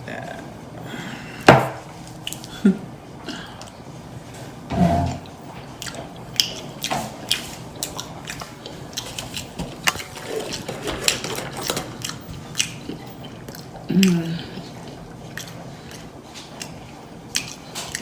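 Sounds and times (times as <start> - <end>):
brief low hum: 4.7 - 5.4
loud open-mouthed chewing: 12.0 - 18.0.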